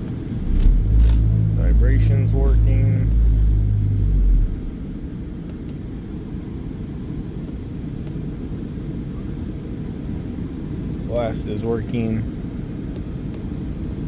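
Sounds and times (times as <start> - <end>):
spreader vibrator loud hum: 0.0 - 5.4
truck engine idling: 0.3 - 5.2.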